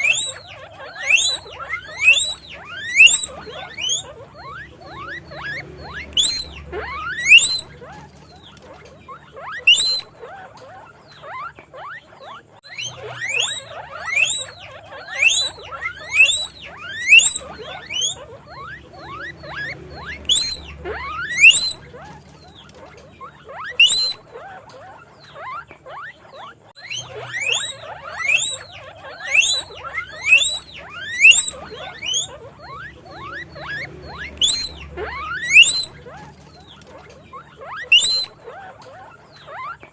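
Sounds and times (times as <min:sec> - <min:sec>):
guinea pigs squeaking: 0:00.0 - 0:39.9.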